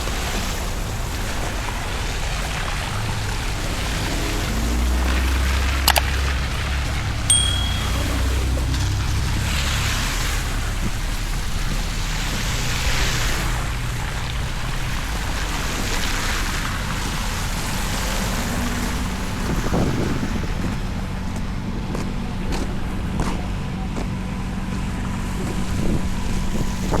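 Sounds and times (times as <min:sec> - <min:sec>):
low traffic rumble: 0:00.0 - 0:27.0
vehicles passing with tyre hiss: 0:08.7 - 0:27.0
wind noise on microphone: 0:25.4 - 0:27.0.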